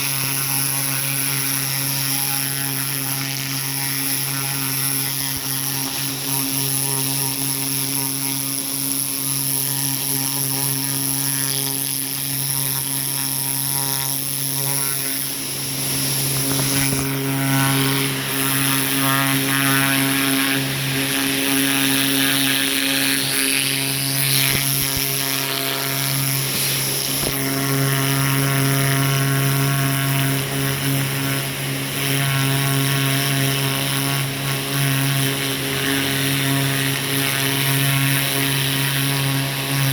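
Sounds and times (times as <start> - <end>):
pressure washer running: 0.0 - 39.9
water spray hissing: 23.0 - 27.6.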